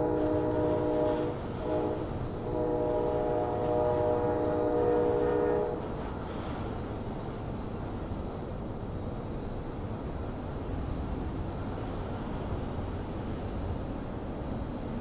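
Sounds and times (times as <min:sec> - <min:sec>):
locomotive horn blasts: 0:00.0 - 0:05.8.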